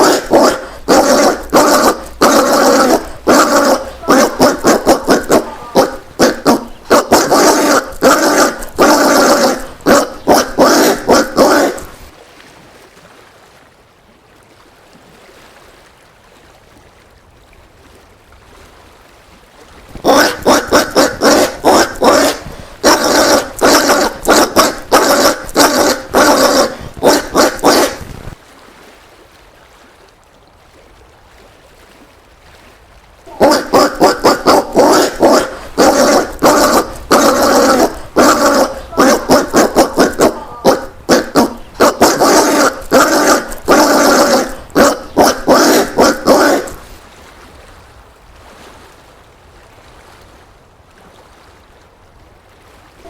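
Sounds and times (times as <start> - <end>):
peccary calling: 0.0 - 12.1, 20.0 - 28.4, 33.3 - 47.0.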